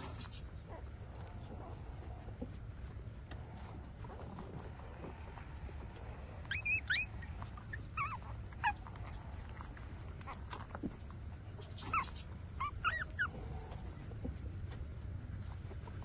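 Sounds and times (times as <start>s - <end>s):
puppies squeaking and whimpering: 6.1s - 10.8s, 11.6s - 13.9s.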